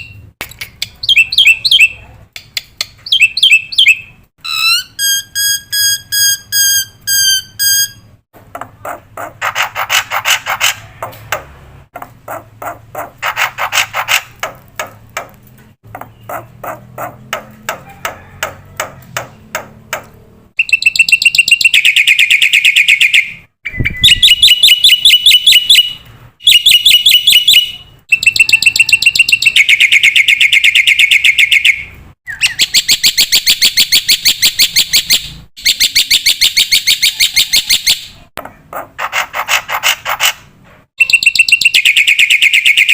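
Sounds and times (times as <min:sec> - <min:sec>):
myna bird calling: 0:02.9 - 0:40.4.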